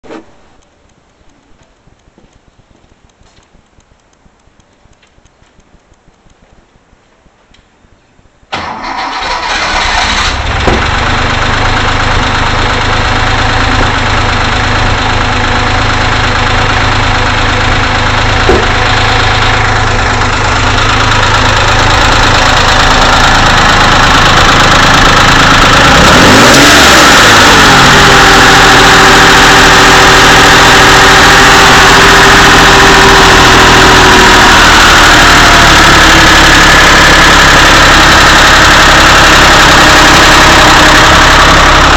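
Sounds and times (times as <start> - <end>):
car engine starting and idling: 8.5 - 41.9.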